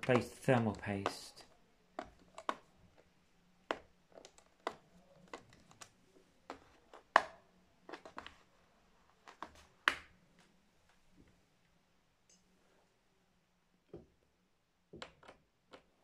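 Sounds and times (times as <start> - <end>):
screwdriver clicking on plastic: 0.0 - 1.2.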